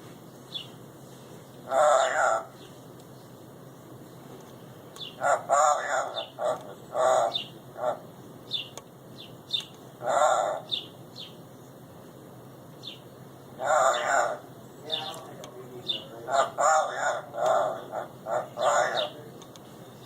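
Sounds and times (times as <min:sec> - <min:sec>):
parrot calling: 0:01.6 - 0:02.7, 0:05.0 - 0:11.4, 0:12.8 - 0:19.4
parrot high chirps: 0:13.6 - 0:14.4.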